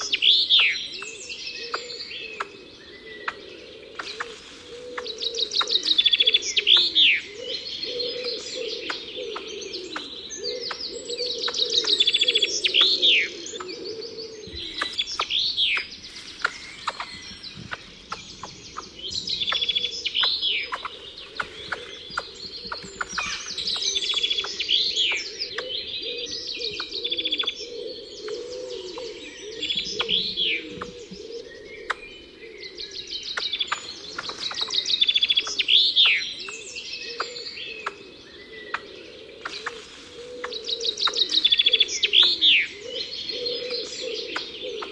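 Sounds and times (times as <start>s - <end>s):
songbird trilling: 0.0s - 44.9s.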